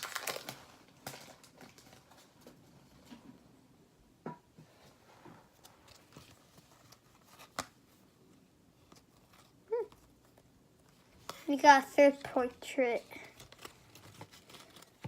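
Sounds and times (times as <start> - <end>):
cards rustling: 5.5 - 15.0.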